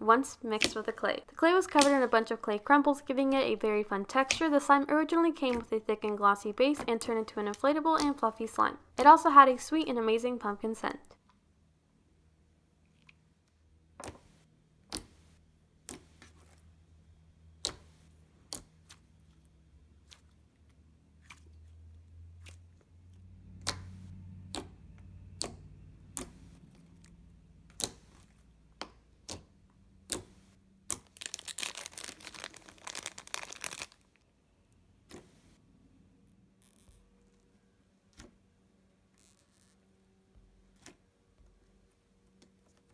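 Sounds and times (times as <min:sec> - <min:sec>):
crackling pops: 0:01.6 - 0:02.2, 0:30.9 - 0:34.0.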